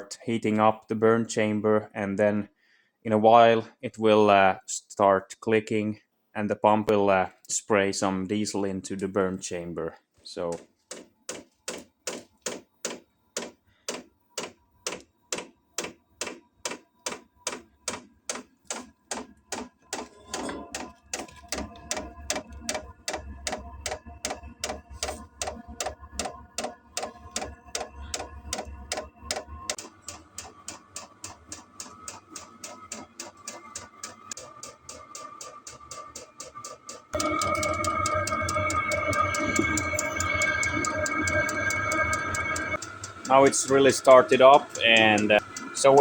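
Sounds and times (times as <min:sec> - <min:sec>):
fuel pump clicking: 0:10.9 - 0:37.7, 0:42.8 - 0:46.0
heater fan and burner running: 0:37.2 - 0:46.0.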